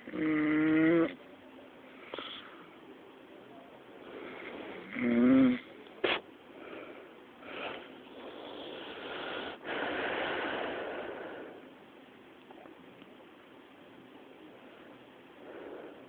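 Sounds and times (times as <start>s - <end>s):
person snoring: 4.2s - 5.7s
sharp snort: 4.5s - 6.2s
wheezy breath: 6.1s - 11.7s.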